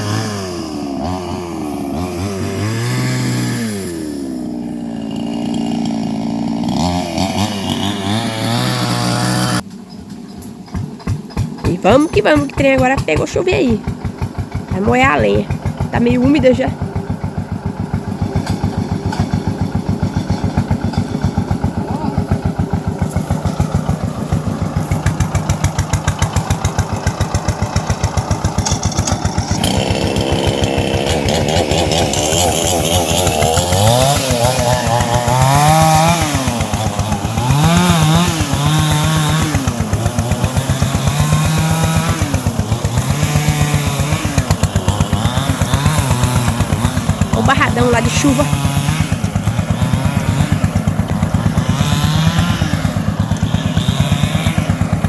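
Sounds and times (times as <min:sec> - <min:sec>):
single-cylinder tractor engine running: 0:00.0 - 0:55.0.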